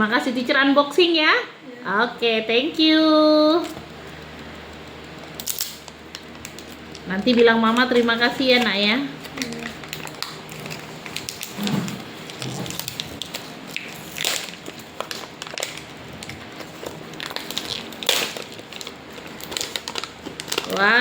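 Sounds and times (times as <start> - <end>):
gift wrapping crackling: 3.6 - 21.0
wrapping paper ripping: 5.4 - 21.0.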